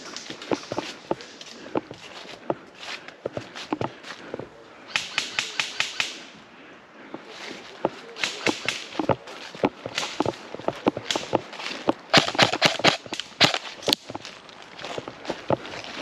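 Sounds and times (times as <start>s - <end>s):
airsoft gun shots: 12.1s - 13.6s.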